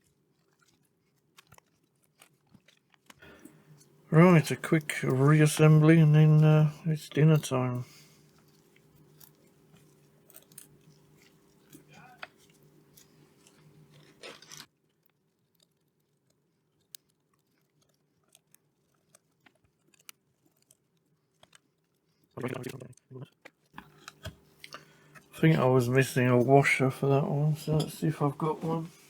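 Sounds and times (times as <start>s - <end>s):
small parts and tools clicking: 0.0s - 25.6s
faint steady hum: 3.2s - 14.7s, 23.8s - 29.0s.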